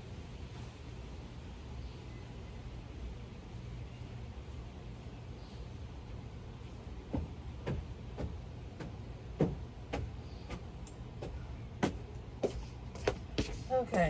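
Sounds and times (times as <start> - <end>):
steady low hum: 0.0 - 14.0
footsteps walking: 7.0 - 14.0.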